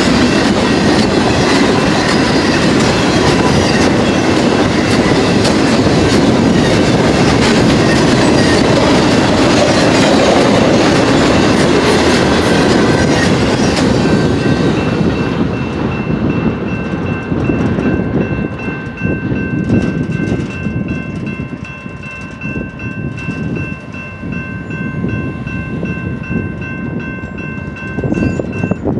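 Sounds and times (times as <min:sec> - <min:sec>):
freight train wheels on rail: 0:00.0 - 0:28.9
high ringing tones: 0:12.2 - 0:28.9.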